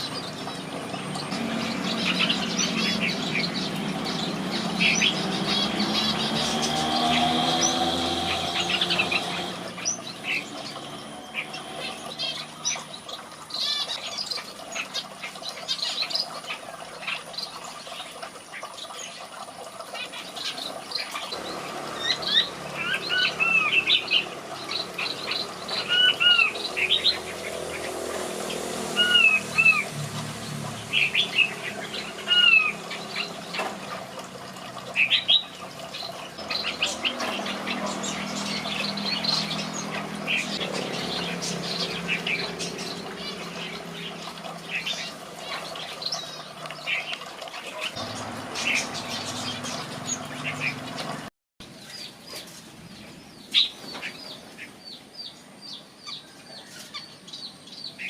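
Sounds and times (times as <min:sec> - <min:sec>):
birds chirping: 0:00.0 - 0:58.0
bird singing whistled phrases: 0:25.8 - 0:27.1, 0:29.0 - 0:29.9.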